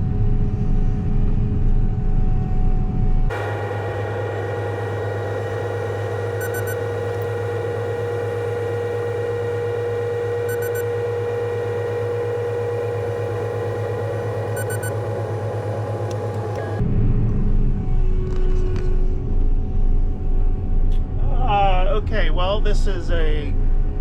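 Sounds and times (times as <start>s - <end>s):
machine drone with whine: 0.0s - 24.0s
triple alarm beep: 6.3s - 7.2s, 10.4s - 11.0s, 14.2s - 15.1s.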